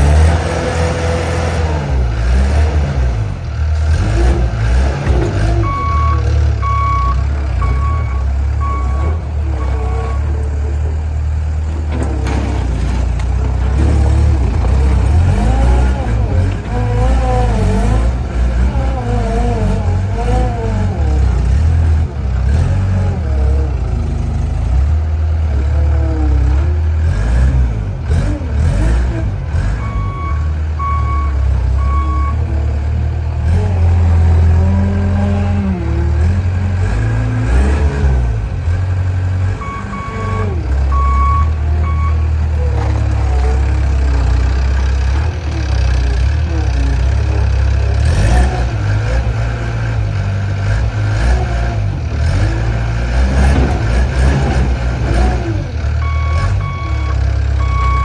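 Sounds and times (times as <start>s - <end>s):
loader engine revving: 0.0s - 58.0s
reversing alarm beeps: 5.6s - 10.3s, 39.6s - 42.2s, 56.0s - 58.0s.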